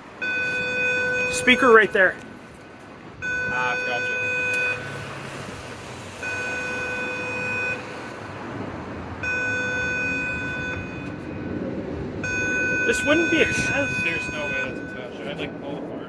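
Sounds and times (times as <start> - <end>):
outdoor speaker alarm tone: 0.2 - 2.2, 3.1 - 5.3, 6.2 - 8.0, 9.2 - 15.3.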